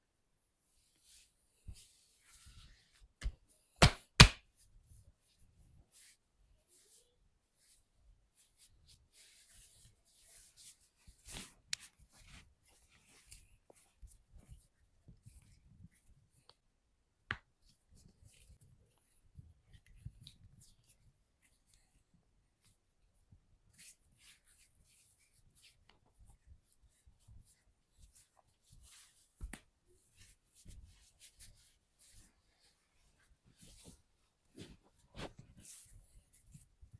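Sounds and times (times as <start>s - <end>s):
hands rubbing over skin: 23.7s - 36.8s.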